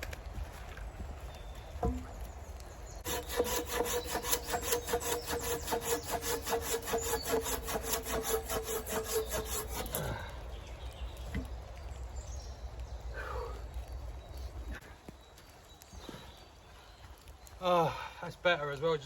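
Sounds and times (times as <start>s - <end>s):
hand saw cutting log: 3.0s - 10.2s.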